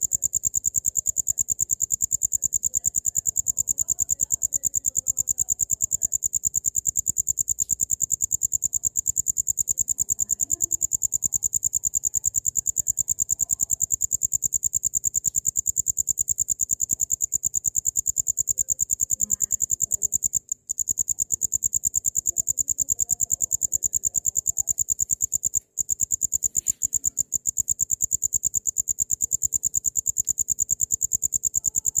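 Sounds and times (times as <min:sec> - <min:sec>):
cricket chirping: 0:00.0 - 0:32.0.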